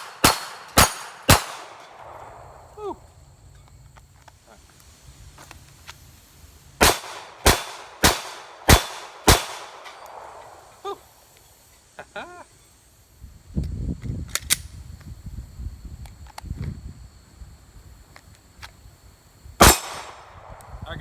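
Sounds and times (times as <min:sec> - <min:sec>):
pistol shots: 0:00.0 - 0:02.7, 0:06.8 - 0:10.8, 0:19.6 - 0:20.6.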